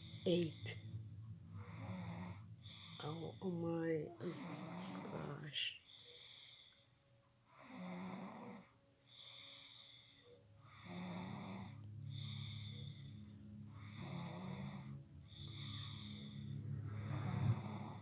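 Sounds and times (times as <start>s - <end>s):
boy snoring heavily: 4.1s - 5.6s, 7.6s - 9.9s, 10.7s - 13.0s, 13.8s - 18.0s.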